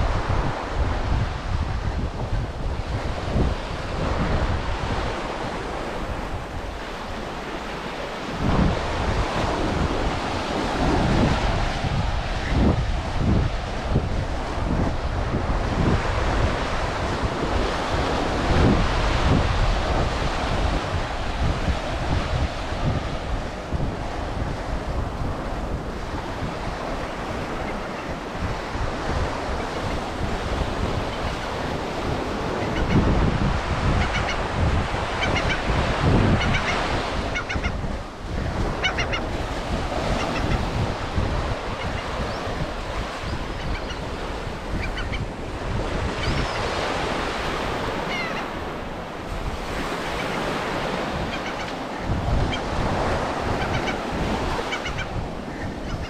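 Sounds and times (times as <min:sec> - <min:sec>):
ocean surf breaking: 0:00.0 - 0:56.0
wind buffeting microphone: 0:00.0 - 0:56.0
seabirds calling: 0:26.5 - 0:56.0.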